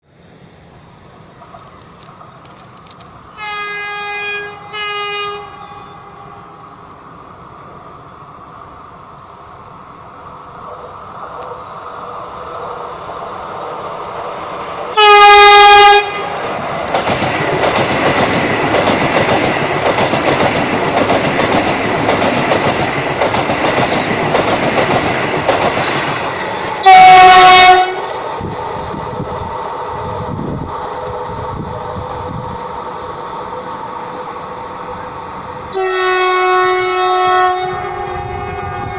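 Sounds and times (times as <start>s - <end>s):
train wheels rushing rumble: 0.1s - 38.9s
train horn blasts: 3.4s - 6.6s, 14.9s - 16.4s, 26.8s - 28.1s, 35.7s - 38.9s.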